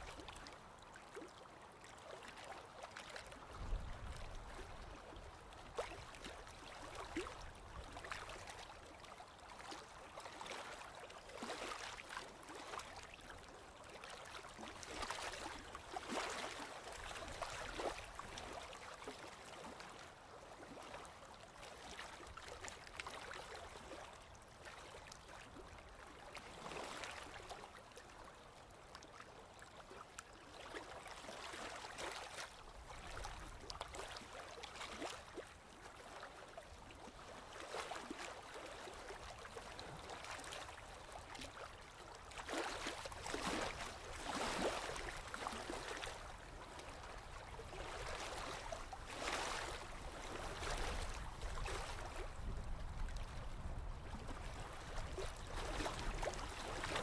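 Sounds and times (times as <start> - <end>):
sea waves splashing on shore: 47.8 - 52.5.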